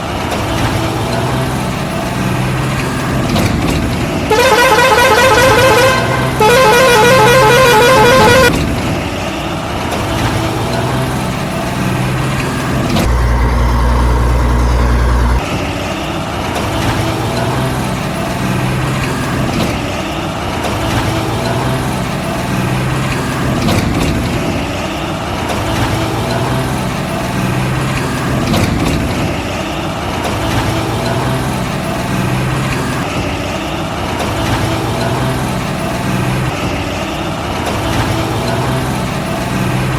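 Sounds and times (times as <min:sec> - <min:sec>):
warbling vehicle horn: 0:04.3 - 0:08.5.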